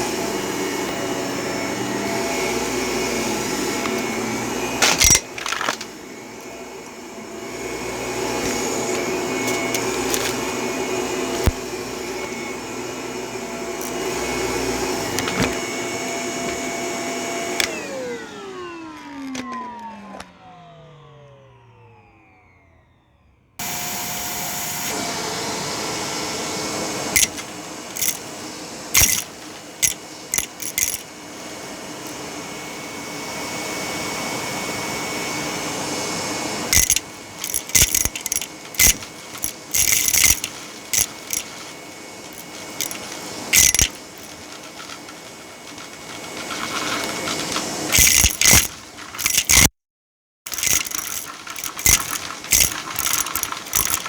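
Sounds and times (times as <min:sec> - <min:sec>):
vacuum cleaner running: 0:00.0 - 0:49.7, 0:50.5 - 0:54.0
debris rattling through vacuum: 0:03.8 - 0:06.0, 0:07.8 - 0:10.7, 0:29.0 - 0:32.2, 0:36.7 - 0:49.7, 0:50.5 - 0:54.0.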